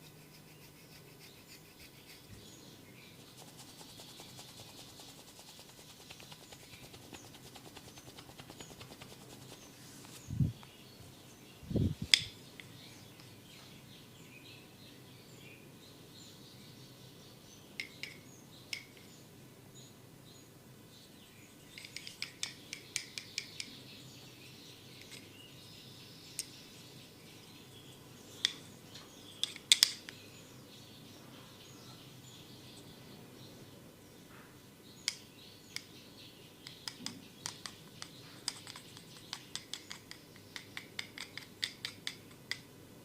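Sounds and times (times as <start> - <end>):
faint bird chirping: 0.0 - 42.7
sharp clicking snaps: 12.1 - 13.3, 29.4 - 30.2, 36.6 - 42.7.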